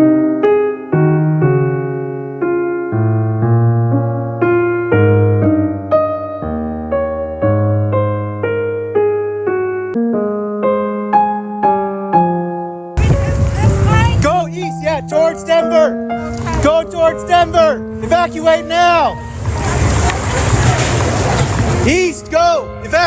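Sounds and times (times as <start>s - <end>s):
piano chords and notes: 0.0s - 23.0s
held low bass notes: 13.0s - 23.0s.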